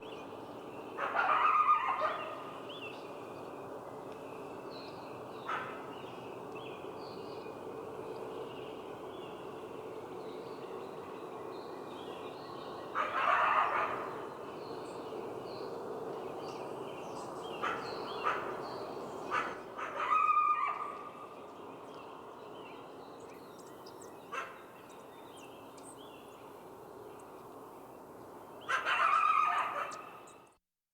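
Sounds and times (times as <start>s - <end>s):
coyote calling: 1.0s - 2.5s, 12.9s - 14.3s, 19.3s - 21.3s, 28.6s - 30.3s.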